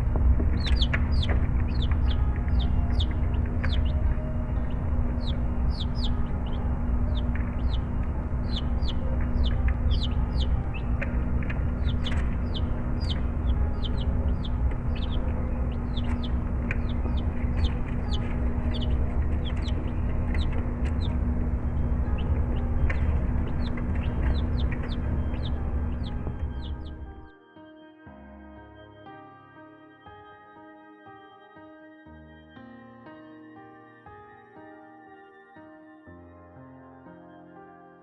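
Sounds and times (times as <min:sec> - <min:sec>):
chicks peeping: 0:00.0 - 0:27.3
steady low hum: 0:00.0 - 0:27.3.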